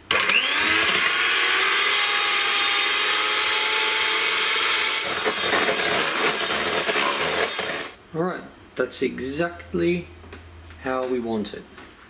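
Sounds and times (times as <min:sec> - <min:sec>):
electric mixer beating cream: 0:00.0 - 0:08.0.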